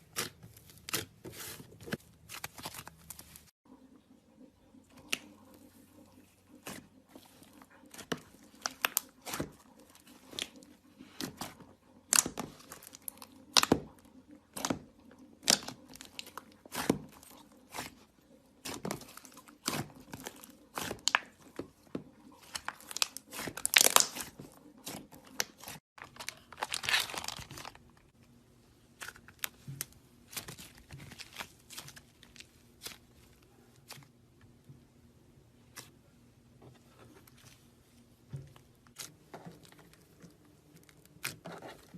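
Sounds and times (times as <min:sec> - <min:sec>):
slime crackling and popping: 0:15.4 - 0:17.9, 0:22.4 - 0:24.4.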